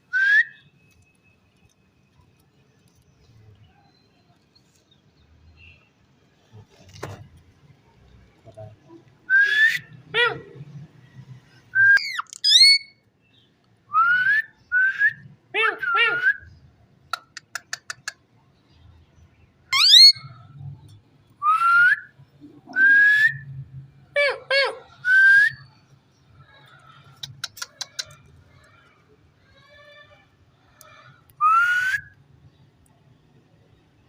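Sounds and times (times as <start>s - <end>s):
parakeet whistling: 11.9s - 12.9s, 19.7s - 20.3s.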